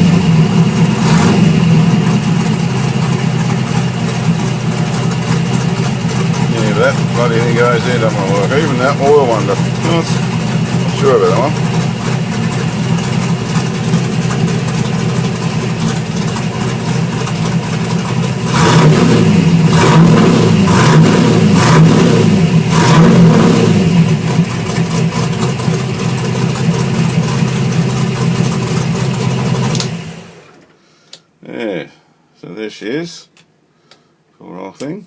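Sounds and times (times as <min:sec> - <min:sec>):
car engine revving and idling: 0:00.0 - 0:30.6.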